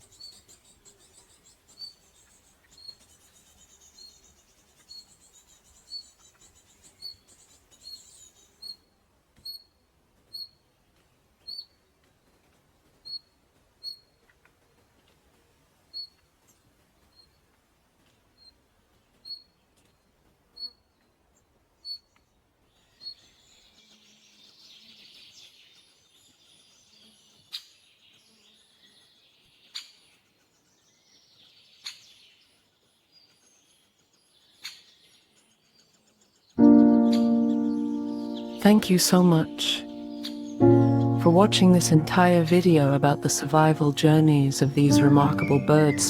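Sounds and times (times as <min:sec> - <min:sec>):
small birds chirping: 0:22.8 - 0:42.1.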